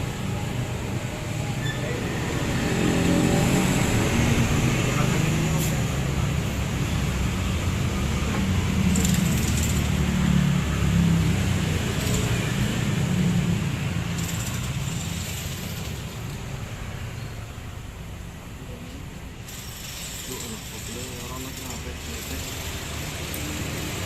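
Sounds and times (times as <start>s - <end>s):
two-stroke engine running: 2.4s - 16.4s, 19.4s - 24.0s.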